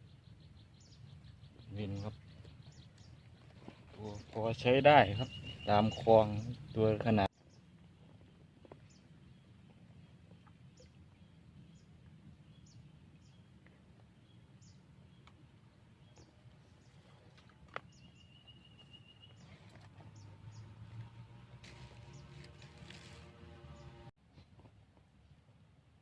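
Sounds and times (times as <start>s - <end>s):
bird chirping: 0.0s - 7.7s, 14.2s - 21.3s.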